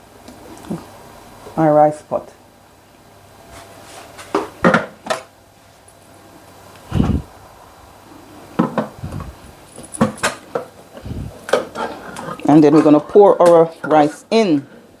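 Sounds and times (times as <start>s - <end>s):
pots and utensils clattering: 9.8s - 14.3s.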